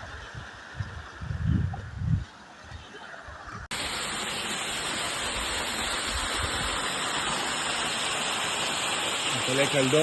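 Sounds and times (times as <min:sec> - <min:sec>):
waterfall roaring: 0:03.7 - 0:10.0.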